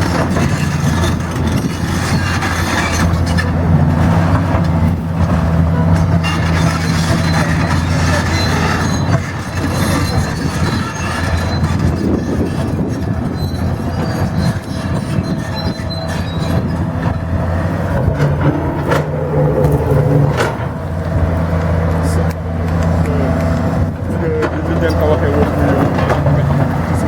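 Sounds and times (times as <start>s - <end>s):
diesel engine humming: 0.0s - 27.0s
high metallic squeals: 0.1s - 3.5s, 5.7s - 21.0s.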